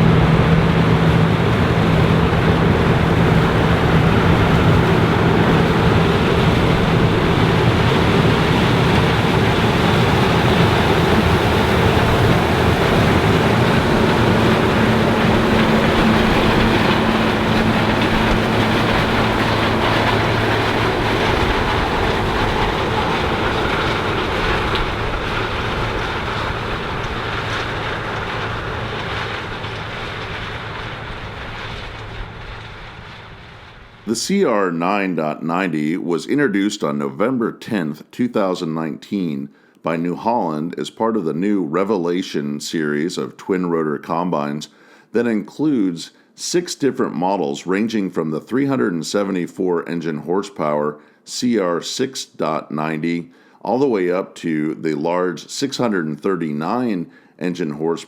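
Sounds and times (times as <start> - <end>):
combine engine hum: 0.0 - 34.3
threshing machinery rushing: 0.0 - 34.4.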